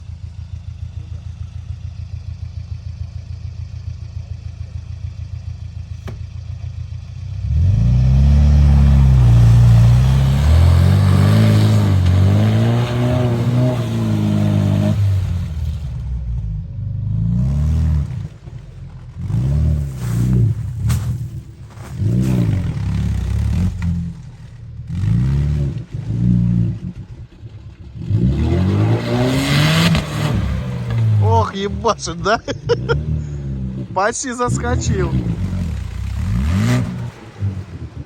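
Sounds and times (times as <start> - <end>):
off-road vehicle engine revving: 4.2 - 38.0.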